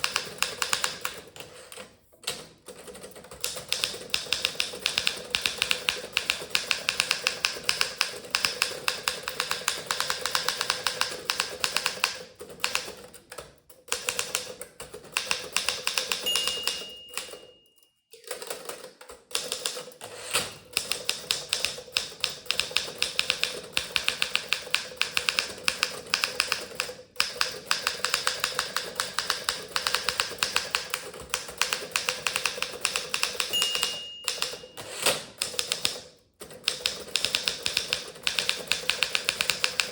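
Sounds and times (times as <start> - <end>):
typewriter typing: 0.0 - 17.6, 18.2 - 39.9
typewriter bell ring: 16.0 - 18.2, 33.3 - 35.2.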